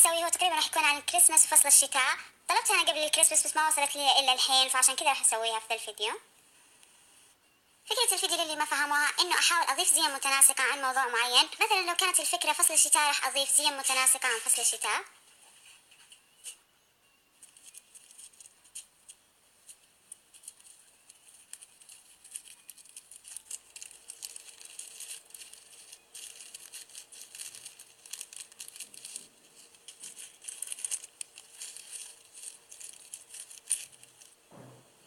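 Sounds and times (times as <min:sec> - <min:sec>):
small trinkets rattling: 0:17.4 - 0:18.9, 0:19.7 - 0:34.5
plastic packets crinkling: 0:17.4 - 0:34.5.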